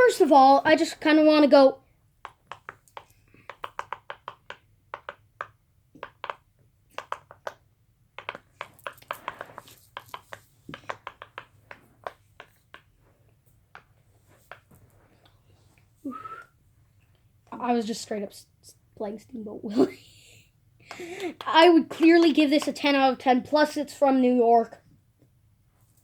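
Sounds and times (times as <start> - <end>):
fidget toy popping: 2.2 - 12.9.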